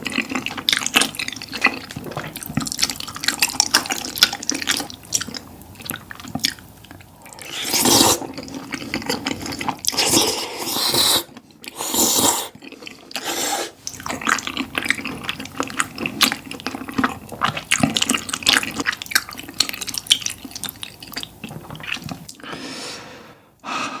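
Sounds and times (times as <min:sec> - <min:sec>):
chewing and smacking: 0:00.0 - 0:10.4, 0:12.5 - 0:22.4
slurping: 0:07.2 - 0:19.0.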